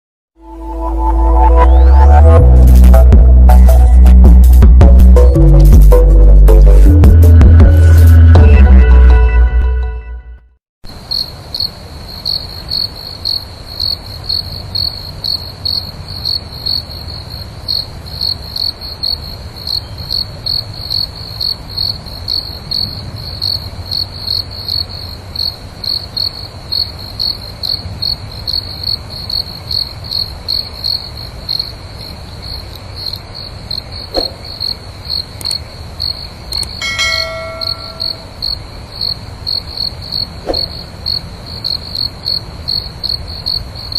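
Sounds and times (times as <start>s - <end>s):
crickets chirping: 10.9s - 43.9s
brief ringing tone: 36.8s - 38.3s.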